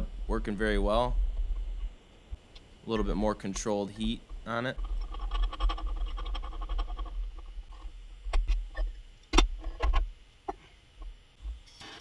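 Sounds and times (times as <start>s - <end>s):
low rumble: 0.0s - 2.0s.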